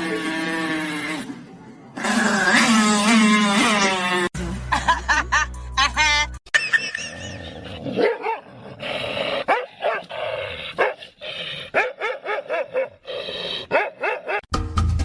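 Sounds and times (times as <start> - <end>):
dog barking and yipping: 7.8 - 8.5, 9.4 - 10.1, 10.8 - 11.0, 11.7 - 13.0, 13.6 - 14.5.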